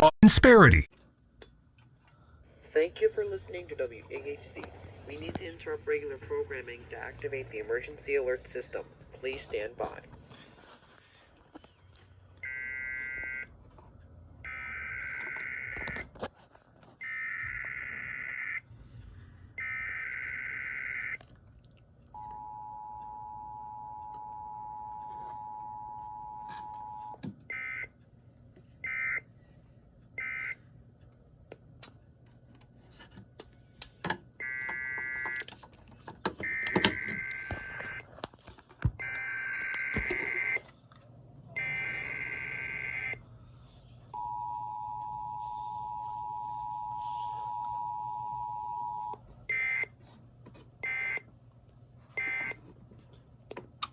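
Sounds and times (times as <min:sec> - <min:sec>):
radio static crackle and clicks: 0:00.0 - 0:00.9, 0:14.5 - 0:18.4, 0:36.4 - 0:40.7.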